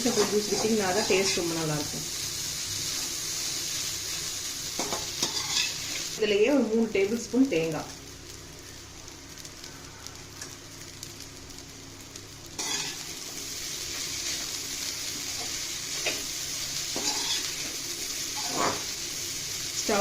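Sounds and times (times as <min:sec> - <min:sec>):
food sizzling: 0:00.0 - 0:20.0
spatula scraping a pan: 0:04.8 - 0:05.8, 0:12.6 - 0:13.0, 0:16.9 - 0:17.7, 0:18.4 - 0:18.9.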